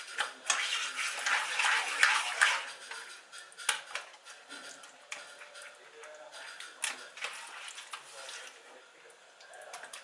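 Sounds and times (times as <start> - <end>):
utensil scraping cookware: 0.0 - 5.8.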